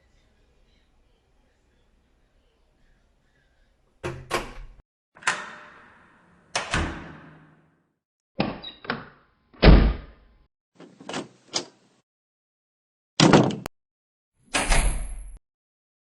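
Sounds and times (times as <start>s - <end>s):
door opening and closing: 4.0s - 7.8s, 8.4s - 10.2s, 10.8s - 11.8s, 13.2s - 13.7s, 14.5s - 15.4s
heavy door thud: 13.2s - 13.7s.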